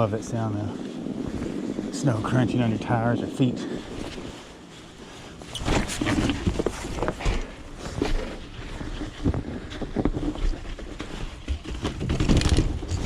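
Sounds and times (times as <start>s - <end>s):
footsteps crunching in snow: 0.0s - 11.4s
wind rumbling on microphone: 0.0s - 13.0s.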